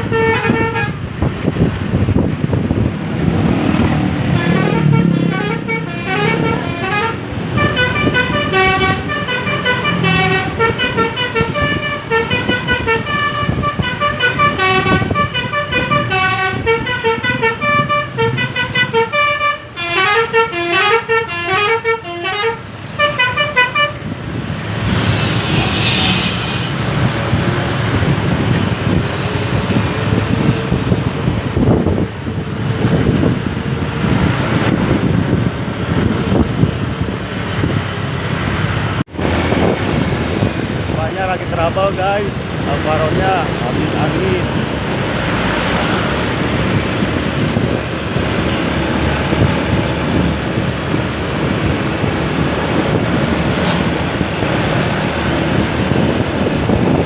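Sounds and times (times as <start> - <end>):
bus air horn melody: 0.0 - 1.1, 4.3 - 24.0, 24.9 - 26.8
engine and traffic noise: 0.0 - 57.0.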